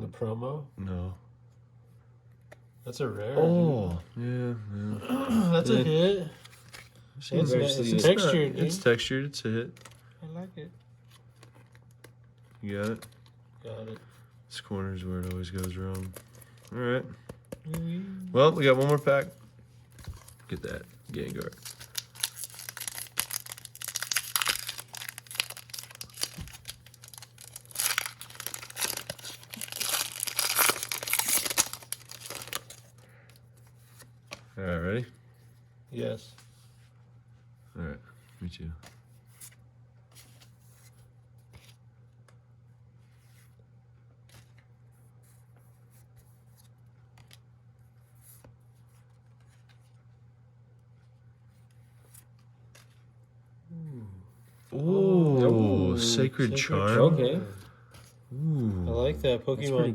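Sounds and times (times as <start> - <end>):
steady low hum: 0.0 - 59.9
trading cards rustling and clicking: 11.0 - 14.2, 15.0 - 17.8, 18.4 - 34.5
foil wrapper tearing and crinkling: 18.6 - 19.3, 20.0 - 32.9.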